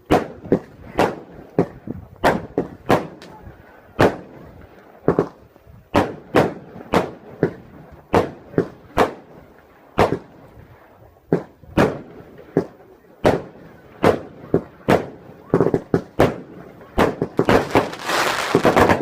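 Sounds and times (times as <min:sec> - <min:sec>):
fireworks exploding: 0:00.0 - 0:03.3, 0:11.3 - 0:19.0.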